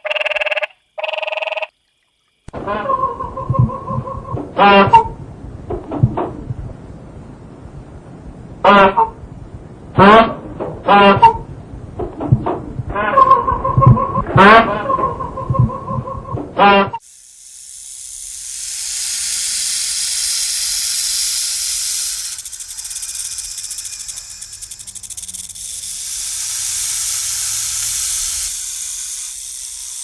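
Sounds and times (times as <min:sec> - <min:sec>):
animal hissing: 0:17.0 - 0:30.0.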